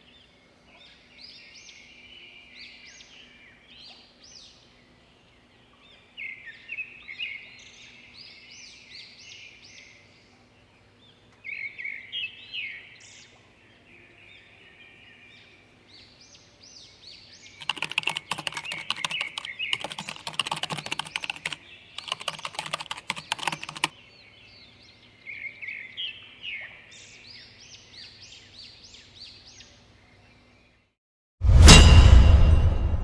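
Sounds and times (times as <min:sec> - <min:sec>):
small birds chirping: 0:15.0 - 0:30.9
rapid keyboard typing: 0:17.6 - 0:23.9
sudden loud hit: 0:31.4 - 0:33.0.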